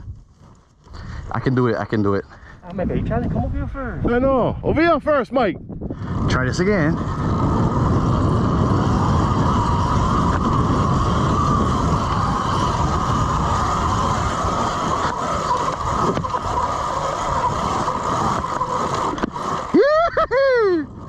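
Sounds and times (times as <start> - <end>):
low rumble: 2.2 - 21.0
electric motor whine: 5.9 - 21.0.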